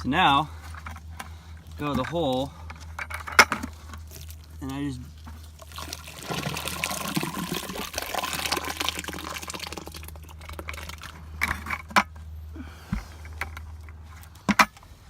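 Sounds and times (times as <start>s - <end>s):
mud slurry splashing and sloshing: 3.7s - 11.4s.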